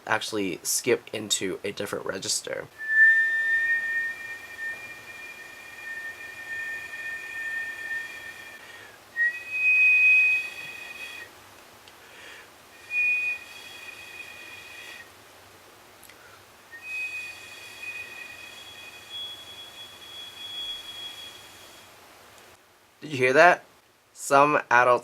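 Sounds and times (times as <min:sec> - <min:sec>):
person whistling: 0:02.8 - 0:08.6, 0:09.2 - 0:11.3, 0:12.8 - 0:15.1, 0:16.8 - 0:21.9.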